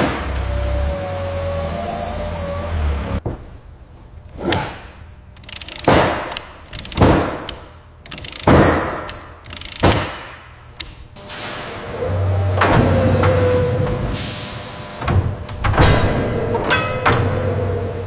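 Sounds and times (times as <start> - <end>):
factory machinery clanking: 11.2 - 18.0.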